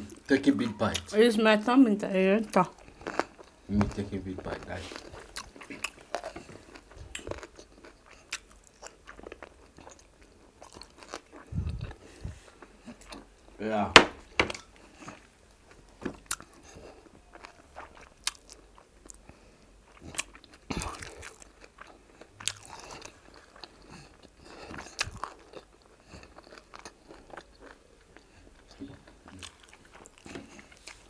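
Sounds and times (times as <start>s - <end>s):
person chewing food: 2.5s - 31.0s.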